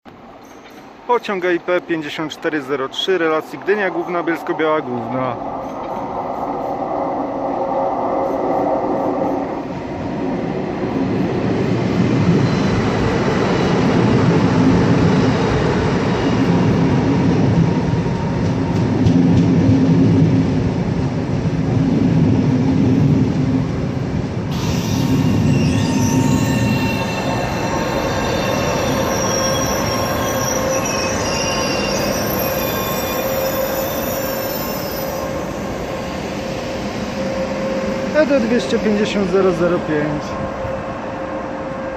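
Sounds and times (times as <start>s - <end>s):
train wheels rumbling on rails: 0.2s - 41.9s
high wheel squeal: 24.5s - 38.2s.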